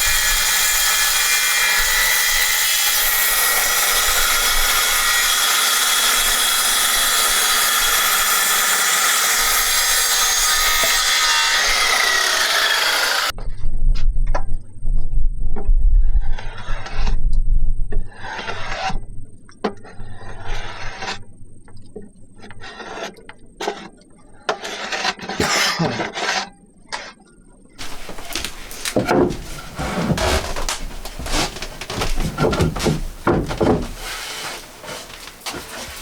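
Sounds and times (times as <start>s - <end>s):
hand tool rasping on wood: 0.0s - 13.3s, 27.8s - 36.0s.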